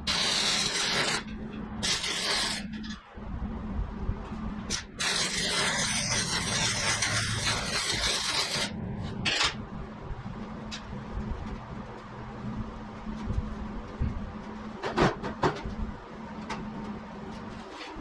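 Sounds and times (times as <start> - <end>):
arc welding hiss: 0.0 - 2.7, 4.7 - 8.7
steady low hum: 0.0 - 18.0.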